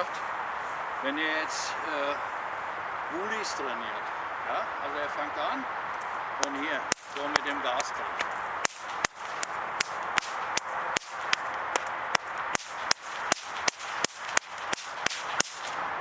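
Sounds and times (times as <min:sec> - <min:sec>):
bullwhip cracking: 0:06.4 - 0:16.0.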